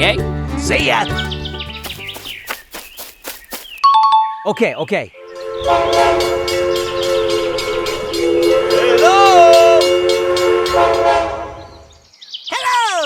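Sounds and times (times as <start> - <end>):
train horn chord: 5.2 - 12.0
train wheel clatter: 5.9 - 11.1.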